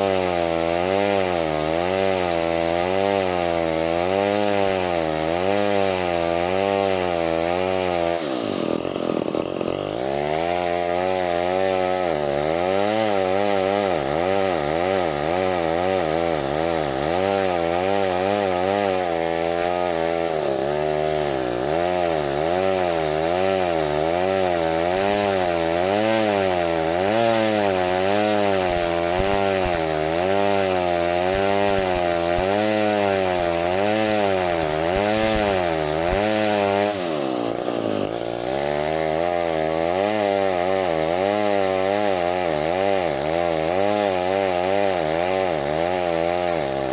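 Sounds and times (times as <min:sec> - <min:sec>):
chainsaw cutting timber: 0:00.0 - 0:46.9.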